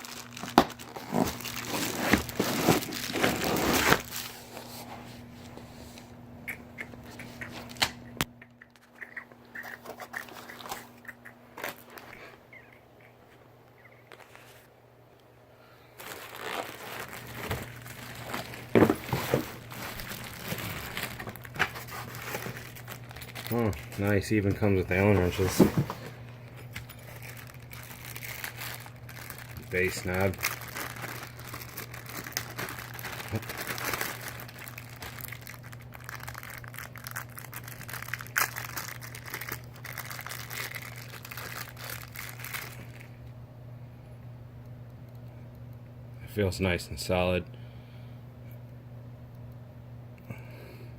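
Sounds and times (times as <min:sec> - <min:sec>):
packaging crinkling and rustling: 0:00.0 - 0:06.1, 0:09.6 - 0:11.0, 0:11.6 - 0:12.4, 0:16.0 - 0:43.2.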